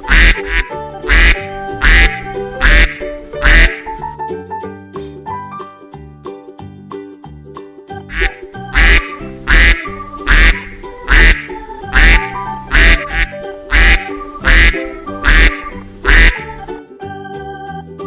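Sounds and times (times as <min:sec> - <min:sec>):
duck quacking: 0:00.0 - 0:04.0, 0:08.1 - 0:16.7
background music: 0:00.0 - 0:18.0.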